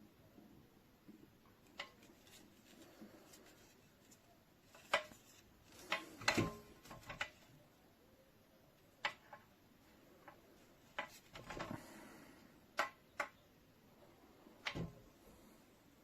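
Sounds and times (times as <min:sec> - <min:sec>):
sharp clicks and knocks: 0:14.6 - 0:15.1.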